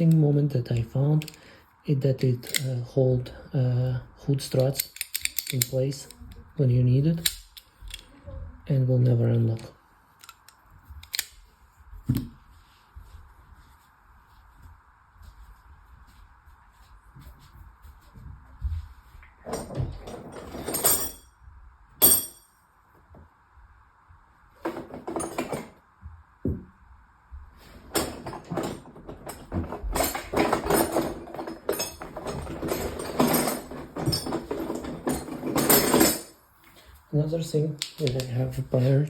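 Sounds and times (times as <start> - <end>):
tools rustling and clinking: 0.0 - 1.4, 2.2 - 2.8, 4.3 - 6.2, 10.2 - 11.4, 19.4 - 21.3, 22.0 - 22.5, 24.6 - 25.8, 27.6 - 36.9.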